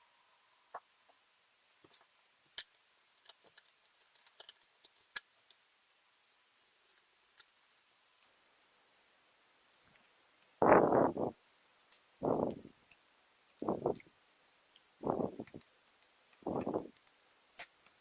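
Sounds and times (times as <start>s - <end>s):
laptop parts clicking: 2.6s - 5.6s, 6.9s - 7.6s.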